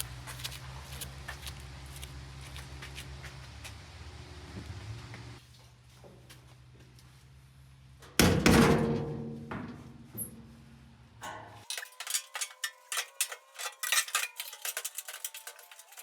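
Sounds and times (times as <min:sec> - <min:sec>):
metallic clang of steel tank: 0:08.2 - 0:10.5, 0:11.2 - 0:12.5.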